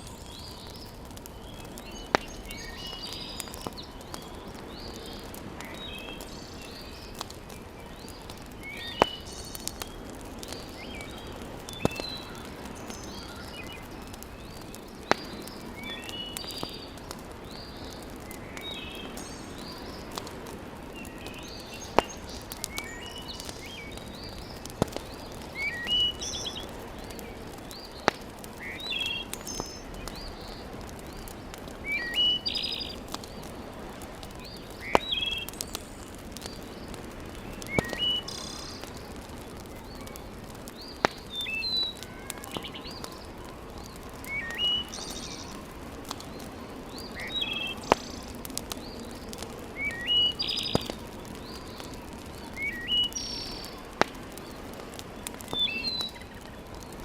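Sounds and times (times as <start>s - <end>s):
songbird chirping: 0.0s - 33.5s, 49.8s - 51.9s, 52.5s - 53.8s
fire crackling pop: 0.0s - 57.0s
wood fire hissing: 0.0s - 57.0s.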